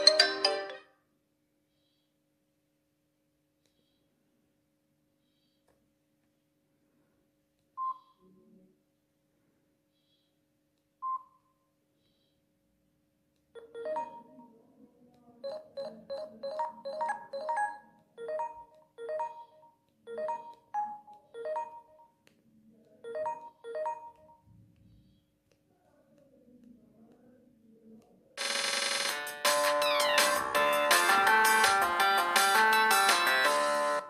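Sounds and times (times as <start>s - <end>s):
polyphonic ringtone melody: 0.0s - 0.9s, 13.6s - 14.4s, 15.4s - 22.2s, 28.4s - 34.0s
phone beep: 13.6s - 14.4s, 15.4s - 22.2s, 23.1s - 24.5s.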